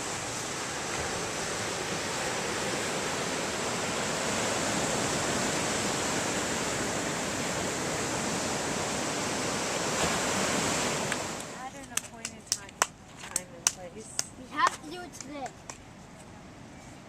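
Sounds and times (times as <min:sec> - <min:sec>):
ocean surf breaking: 0:00.0 - 0:13.0.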